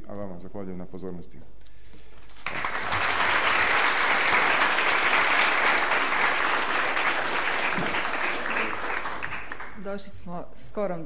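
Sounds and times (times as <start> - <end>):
audience applauding: 2.2 - 9.9.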